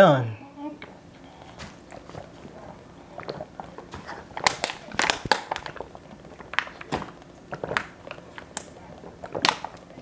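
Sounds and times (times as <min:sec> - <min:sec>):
plastic bottle crinkling: 0:03.2 - 0:09.8.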